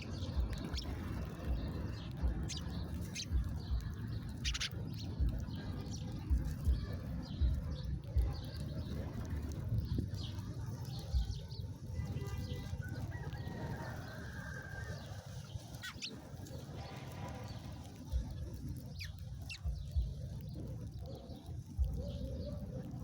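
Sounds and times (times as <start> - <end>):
low steady rumble: 0.0 - 13.4.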